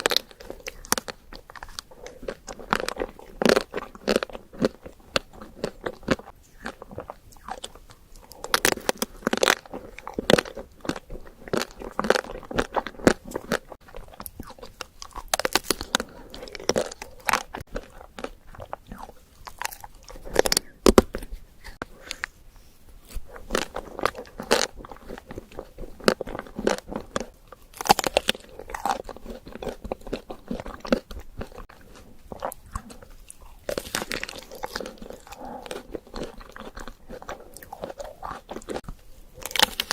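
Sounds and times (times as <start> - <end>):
person chewing sticky sweets: 0.0 - 39.9.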